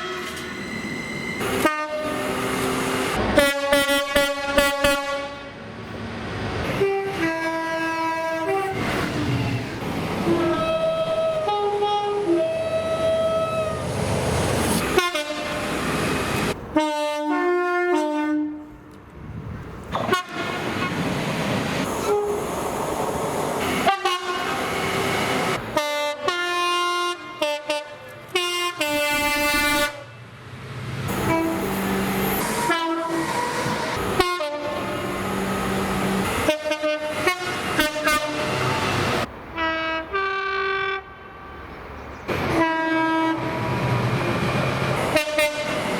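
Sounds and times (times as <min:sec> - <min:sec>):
trains running: 0:00.0 - 0:16.9, 0:19.8 - 0:40.2, 0:41.3 - 0:45.9
train horn chords: 0:01.4 - 0:02.6, 0:03.2 - 0:05.6, 0:06.7 - 0:08.8, 0:10.2 - 0:13.8, 0:14.8 - 0:18.7, 0:23.6 - 0:30.1, 0:31.1 - 0:41.4, 0:42.5 - 0:43.7, 0:45.1 - 0:45.9.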